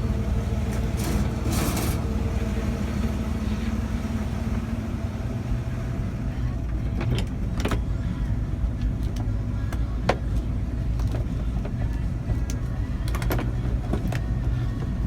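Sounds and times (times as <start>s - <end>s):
engine running low hum: 0.0s - 15.0s.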